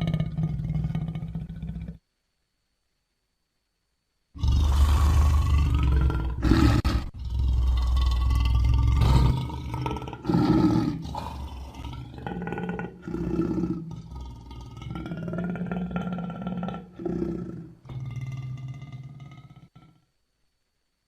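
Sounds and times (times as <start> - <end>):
lion roaring: 0.0 - 2.0, 4.4 - 20.0.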